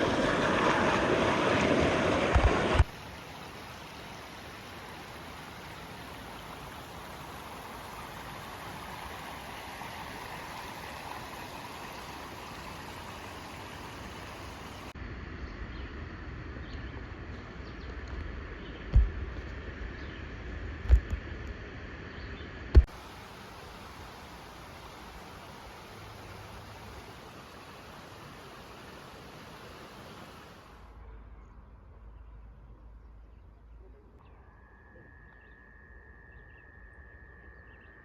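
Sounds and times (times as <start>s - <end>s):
water flowing steadily: 0.0s - 15.0s, 22.7s - 31.1s
waterfall rushing: 0.0s - 15.0s, 22.9s - 30.8s.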